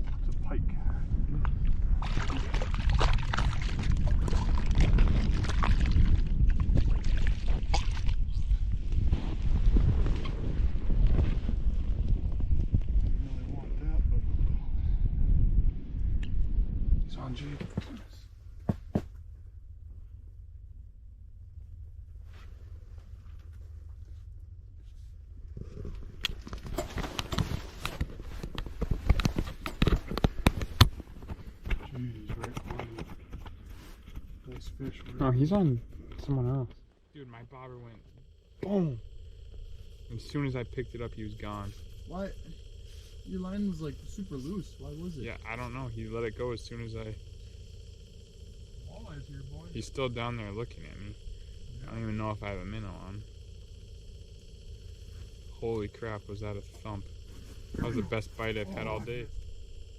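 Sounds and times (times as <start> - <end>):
wind buffeting microphone: 0.0 - 17.6.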